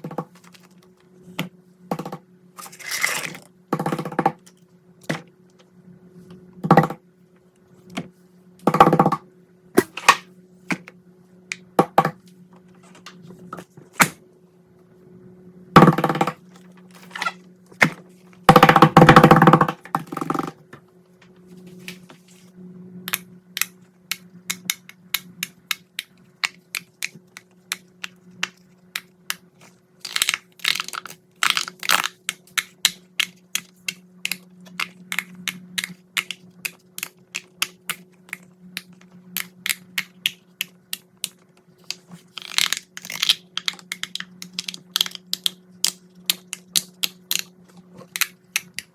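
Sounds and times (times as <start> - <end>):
fidget toys clicking and popping: 42.4 - 47.5.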